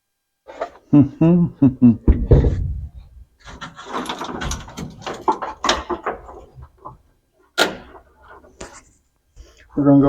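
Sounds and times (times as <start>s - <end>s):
parts clattering and rattling: 3.4s - 9.0s.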